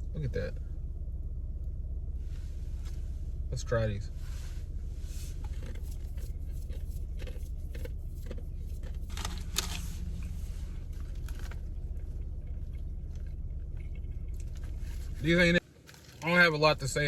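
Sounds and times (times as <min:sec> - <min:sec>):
steady low hum: 0:00.0 - 0:17.0
person crunching dry snacks: 0:05.6 - 0:09.9.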